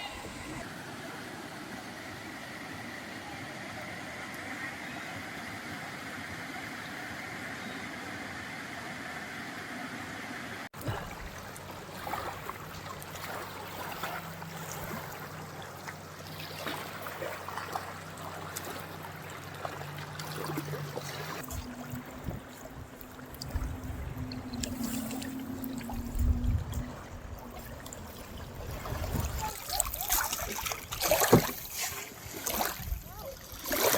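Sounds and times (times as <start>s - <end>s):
water flowing in a stream: 0.0s - 33.9s
water splashes: 10.8s - 33.9s.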